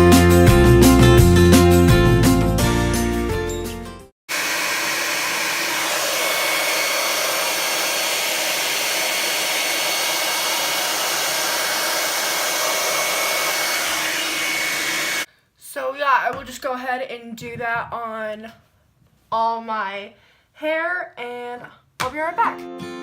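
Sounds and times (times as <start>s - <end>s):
blow dryer running: 4.3s - 15.3s.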